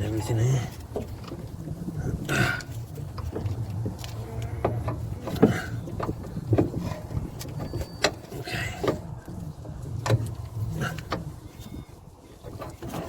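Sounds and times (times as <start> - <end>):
metallic knocks and clunks: 4.6 - 9.2.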